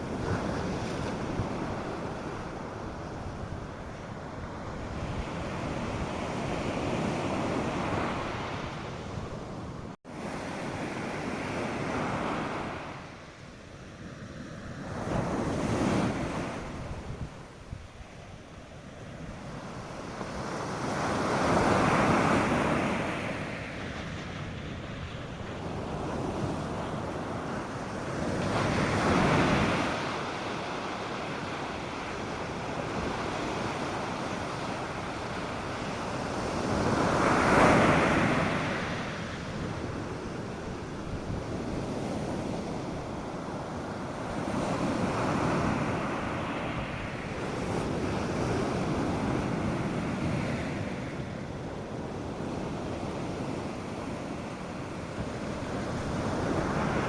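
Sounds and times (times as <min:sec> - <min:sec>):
light wind: 0:00.0 - 0:57.0
waves breaking on beach: 0:00.0 - 0:57.0.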